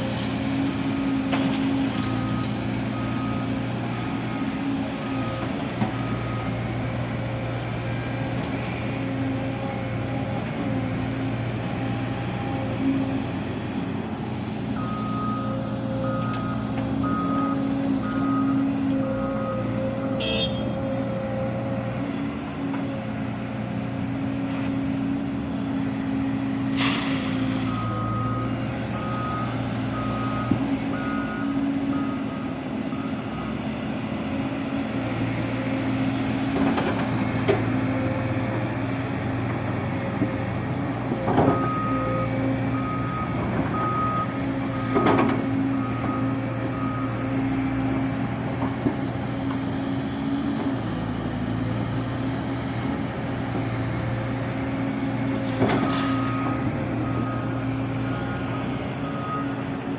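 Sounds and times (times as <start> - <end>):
diesel engine running: 0.0 - 59.9
reversing alarm beeping: 1.8 - 7.0, 14.7 - 21.7, 26.8 - 33.7, 41.1 - 47.8, 55.7 - 59.9.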